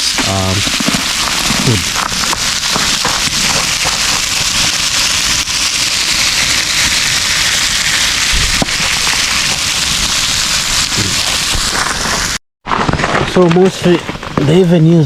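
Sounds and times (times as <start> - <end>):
sharp pops of frying: 0.0 - 9.8
food sizzling in oil: 0.0 - 12.4.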